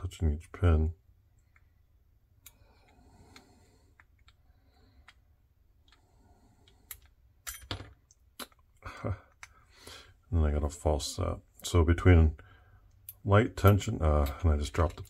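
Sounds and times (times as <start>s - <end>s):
lock pick clicking and scraping: 6.6s - 8.6s.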